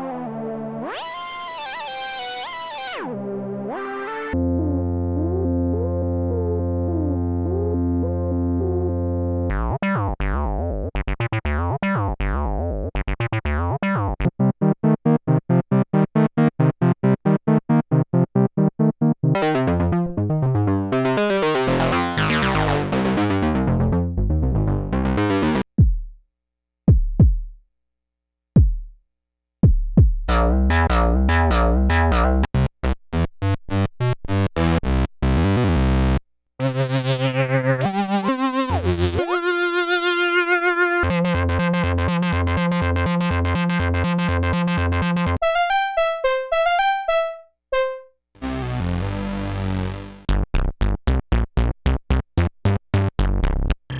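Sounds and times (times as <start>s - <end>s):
synth bass plucks: 4.4s - 25.7s, 30.3s - 39.6s, 41.0s - 53.9s
synthesizer notes: 19.3s - 25.6s, 30.3s - 32.5s, 41.0s - 50.2s
sequenced synth pattern: 19.4s - 24.1s, 24.7s - 25.6s, 30.3s - 32.5s, 41.0s - 48.6s.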